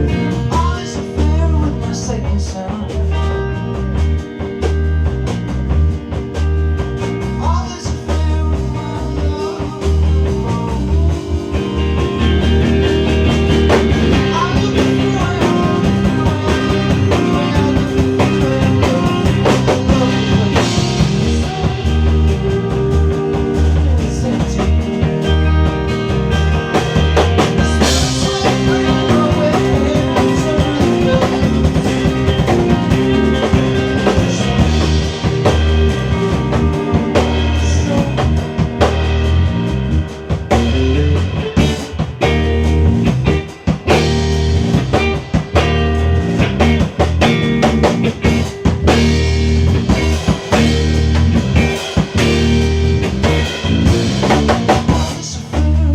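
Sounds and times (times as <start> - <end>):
heavy bass line: 0.0 - 55.9
live band playing: 0.0 - 55.9.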